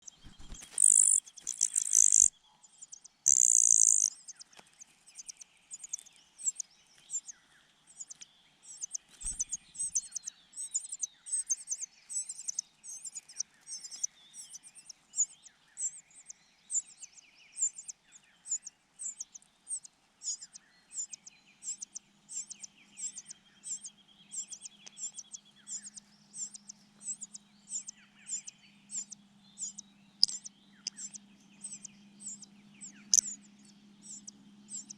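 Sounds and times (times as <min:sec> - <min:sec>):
loud harsh bird calls: 0:00.0 - 0:02.3, 0:03.3 - 0:04.2
nestlings begging cries: 0:00.1 - 0:02.3, 0:03.3 - 0:04.4, 0:08.0 - 0:16.2, 0:18.5 - 0:34.9.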